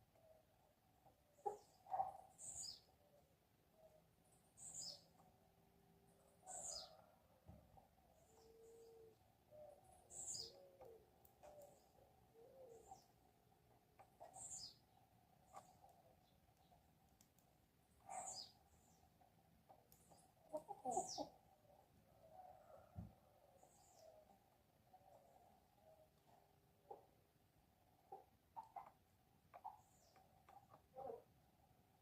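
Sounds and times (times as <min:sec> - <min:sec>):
soft low bird chirps: 0:06.1 - 0:27.1.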